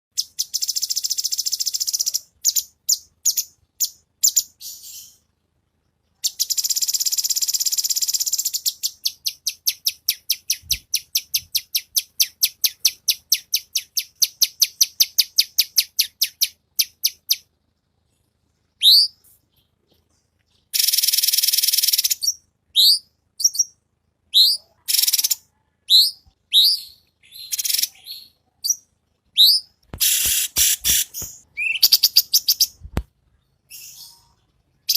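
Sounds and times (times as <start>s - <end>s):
rising whistled bird notes: 18.8s - 19.2s.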